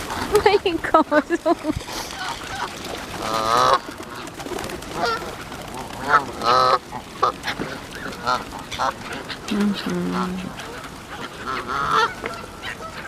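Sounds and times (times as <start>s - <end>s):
geese honking: 2.0s - 4.3s, 4.9s - 13.0s.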